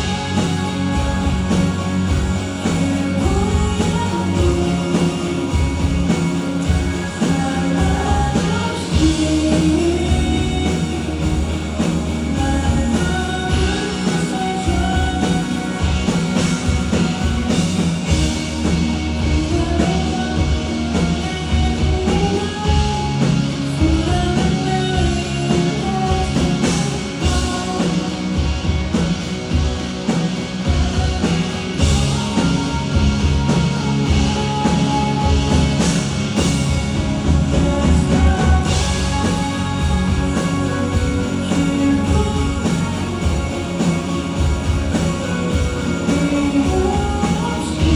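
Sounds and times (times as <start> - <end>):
person singing: 0.0 - 18.3, 19.2 - 28.5, 30.6 - 36.6, 37.4 - 47.9
live rock band playing: 0.0 - 47.9.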